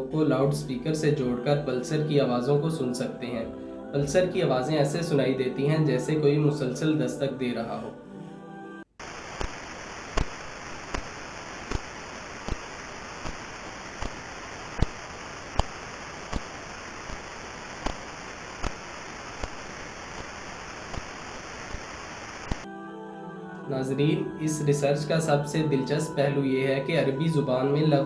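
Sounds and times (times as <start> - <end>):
steady hiss: 9.0 - 22.6.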